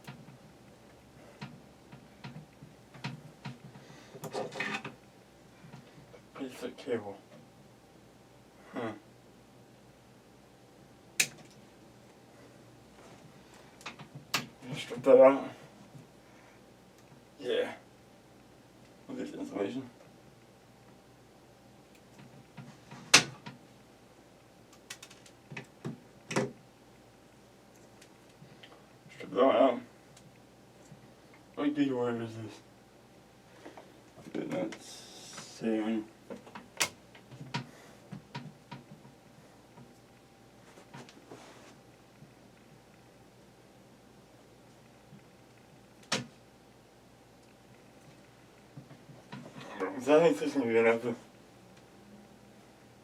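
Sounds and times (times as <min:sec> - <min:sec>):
wire strippers clicking and snapping: 0:01.4 - 0:05.0, 0:11.2 - 0:11.6, 0:13.8 - 0:14.6, 0:24.7 - 0:26.6, 0:36.3 - 0:40.2, 0:45.5 - 0:46.4.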